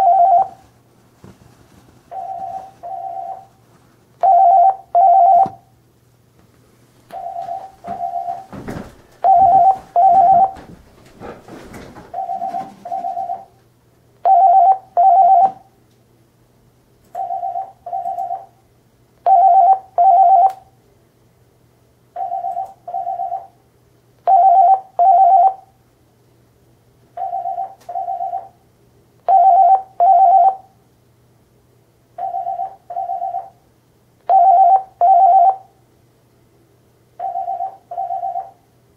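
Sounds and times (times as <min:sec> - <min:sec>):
telephone double ring beeps: 0:00.0 - 0:00.6, 0:04.2 - 0:05.6, 0:09.2 - 0:10.6, 0:14.3 - 0:15.6, 0:19.3 - 0:20.6, 0:24.3 - 0:25.6, 0:27.2 - 0:28.5, 0:29.3 - 0:30.6, 0:32.2 - 0:33.6, 0:34.3 - 0:35.7, 0:37.2 - 0:38.6
clatter and rustling: 0:07.4 - 0:13.4.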